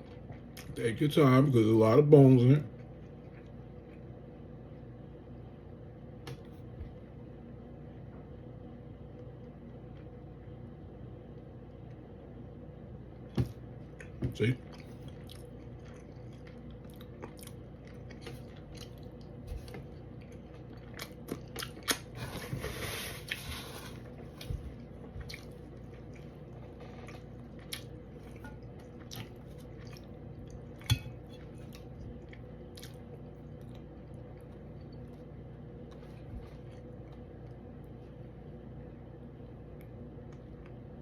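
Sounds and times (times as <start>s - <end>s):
chewing fish: 13.9s - 22.2s, 23.3s - 38.1s.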